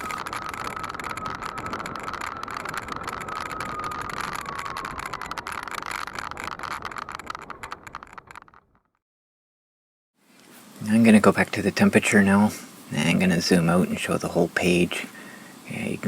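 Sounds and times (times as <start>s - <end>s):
electric scooter motor whine: 0.0s - 8.8s
light rattling: 0.0s - 8.8s
wheels rolling: 0.0s - 8.9s.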